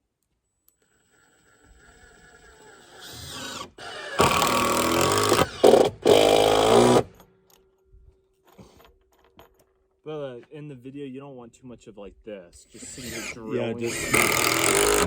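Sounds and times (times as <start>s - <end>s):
power drill running in bursts: 1.8s - 7.1s, 12.8s - 15.0s.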